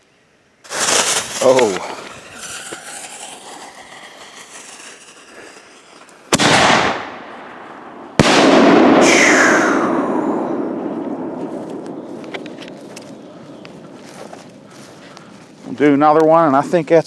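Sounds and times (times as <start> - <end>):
firework crackling hiss: 0.6 - 14.4
firework bangs: 0.7 - 13.3.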